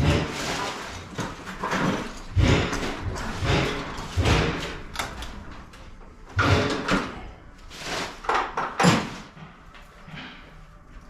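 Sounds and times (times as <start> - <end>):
garage door rattling and thudding: 0.0 - 7.3, 8.3 - 9.7.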